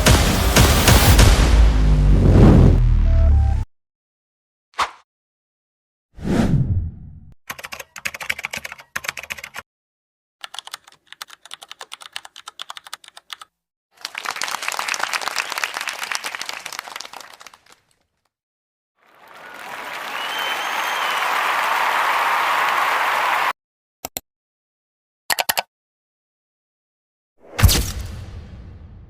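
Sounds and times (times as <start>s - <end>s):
computer keyboard typing: 7.5s - 9.6s, 10.4s - 13.5s.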